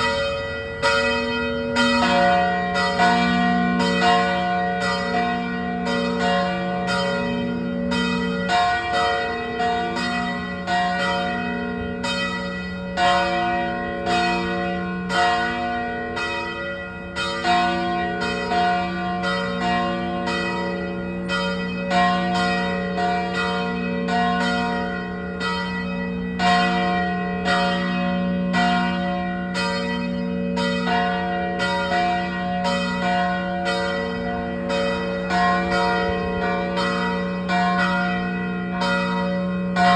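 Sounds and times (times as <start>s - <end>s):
church bells ringing: 0.0s - 39.9s.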